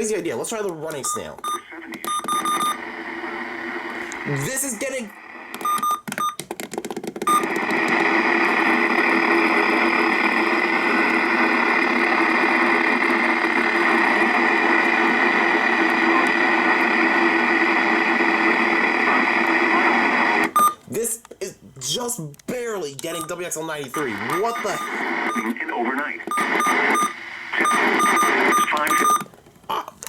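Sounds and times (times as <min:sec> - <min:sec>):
radio static hiss: 0:00.0 - 0:05.6, 0:07.3 - 0:21.2, 0:21.8 - 0:30.0
weak radio station: 0:00.0 - 0:05.6, 0:07.2 - 0:30.0
radio short beeps: 0:01.0 - 0:02.8, 0:23.1 - 0:25.6, 0:26.3 - 0:29.2.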